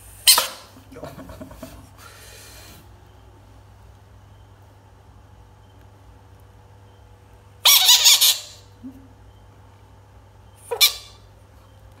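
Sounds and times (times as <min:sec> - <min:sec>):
frog screaming: 0:07.7 - 0:08.6.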